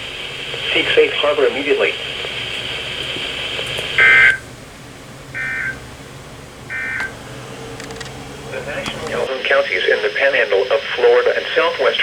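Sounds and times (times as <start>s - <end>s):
buzzy digital data bursts: 0.0s - 4.5s
radio hiss: 0.0s - 12.0s.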